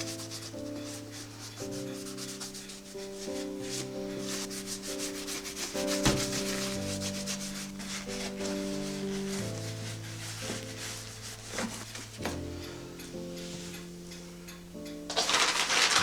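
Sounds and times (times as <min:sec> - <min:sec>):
scrubbing against hard surface: 0:00.0 - 0:12.5
soft background music: 0:00.0 - 0:16.0.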